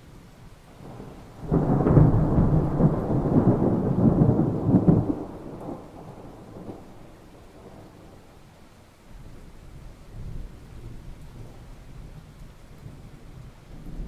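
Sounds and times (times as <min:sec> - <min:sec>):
rain: 0:00.0 - 0:14.0
thunder crack and rumble: 0:00.8 - 0:08.0.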